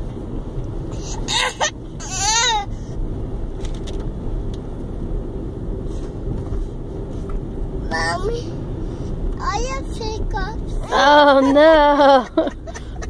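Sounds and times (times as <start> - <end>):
child shrieking: 1.1 - 2.7, 10.8 - 12.0.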